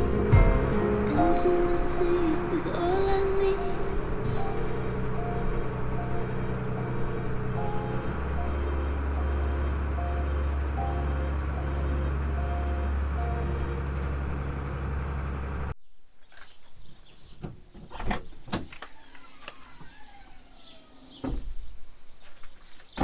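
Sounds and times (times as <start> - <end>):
low engine drone: 0.0 - 15.8
low rumble: 0.0 - 15.8.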